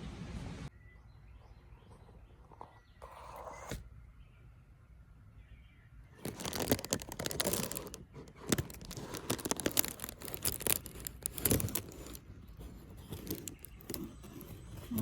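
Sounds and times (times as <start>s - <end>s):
rustling and crinkling: 6.2s - 15.0s.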